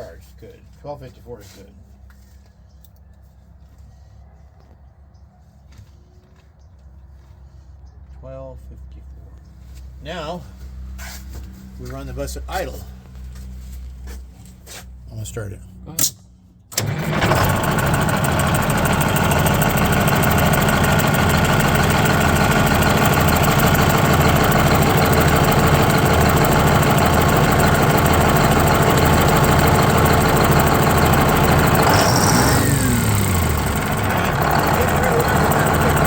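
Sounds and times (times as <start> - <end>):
bus engine starting and idling: 16.6 - 36.0.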